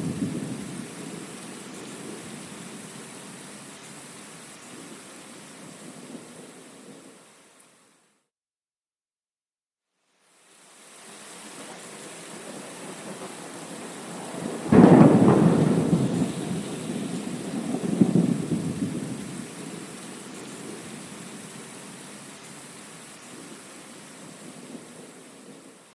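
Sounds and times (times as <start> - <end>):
rumbling thunder: 0.0 - 2.2, 12.3 - 21.2
steady rain: 0.0 - 8.2, 10.0 - 25.9
thunderclap: 12.4 - 20.0.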